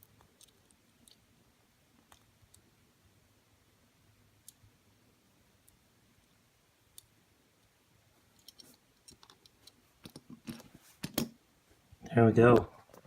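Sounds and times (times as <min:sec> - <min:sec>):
small toy parts clicking: 0:08.4 - 0:10.2.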